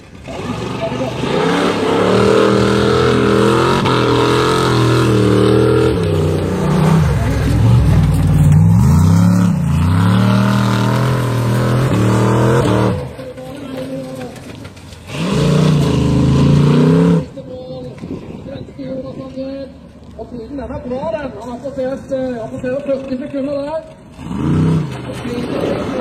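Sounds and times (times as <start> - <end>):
car engine revving hard: 0.2 - 13.1, 15.1 - 17.3.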